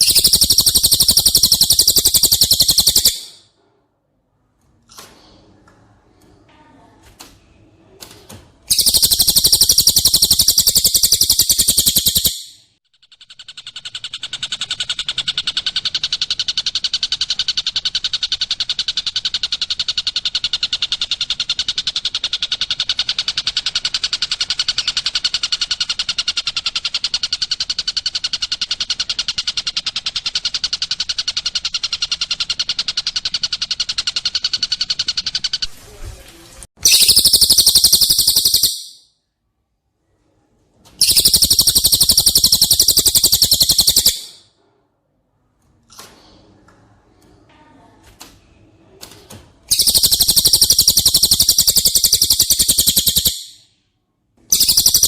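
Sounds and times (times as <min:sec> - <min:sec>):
bird trilling: 0:00.0 - 0:03.4, 0:08.7 - 0:35.7, 0:36.8 - 0:39.0, 0:41.0 - 0:44.4, 0:49.7 - 0:53.6, 0:54.5 - 0:55.0.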